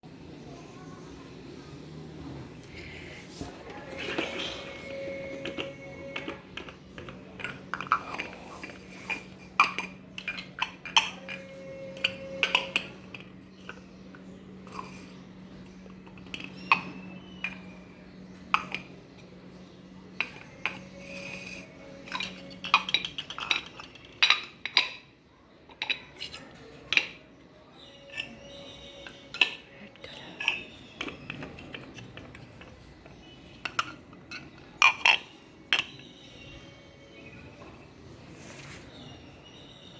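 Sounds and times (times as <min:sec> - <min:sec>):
plastic toy pieces clattering: 0:03.8 - 0:15.2, 0:20.2 - 0:25.1, 0:28.1 - 0:36.3.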